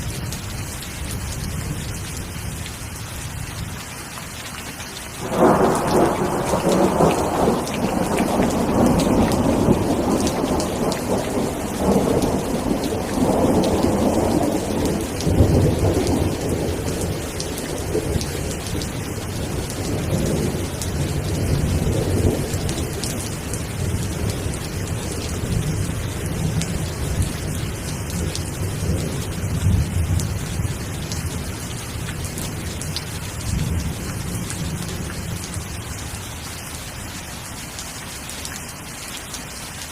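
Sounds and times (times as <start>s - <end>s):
steady rain: 0.0s - 39.9s
thunder rumbling: 5.2s - 35.8s.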